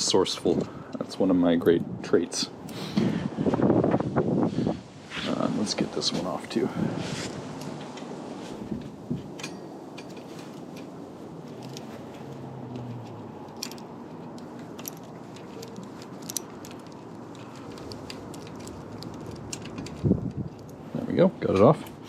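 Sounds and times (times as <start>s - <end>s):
allen key clicking on bolt: 13.4s - 20.8s.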